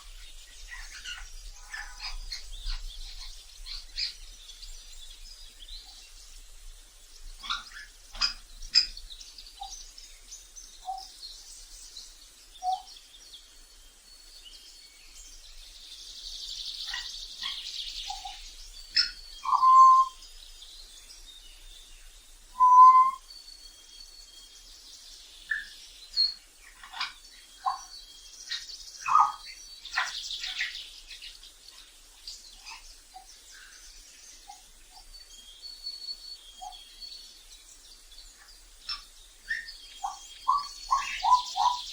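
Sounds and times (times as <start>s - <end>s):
parrot squawks: 19.4s - 20.2s, 22.6s - 23.2s
parrot whistles and chirps: 19.4s - 20.2s, 22.5s - 23.3s.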